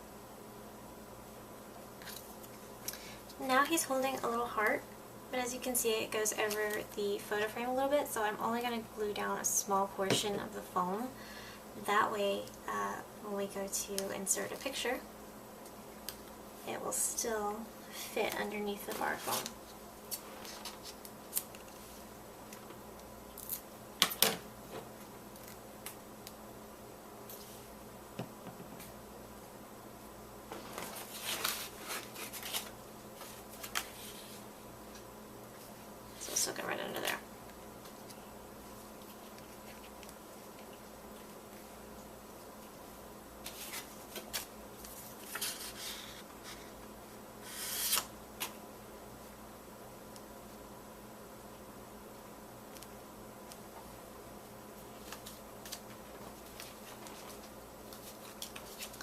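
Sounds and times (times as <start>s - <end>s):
paper rustling and scraping: 18.9s - 22.0s, 30.5s - 34.4s, 43.4s - 46.8s.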